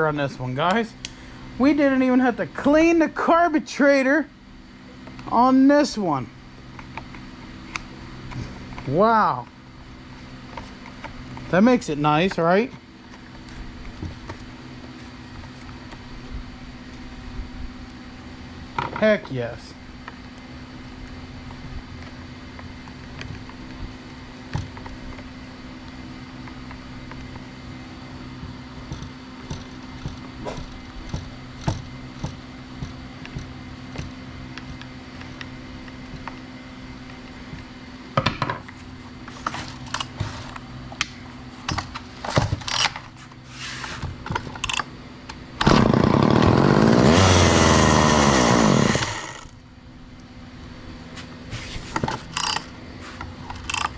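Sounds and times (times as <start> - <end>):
steady low hum: 0.0 - 53.9
chainsaw knocks and rattles: 28.8 - 34.1
chainsaw revving: 45.6 - 49.5.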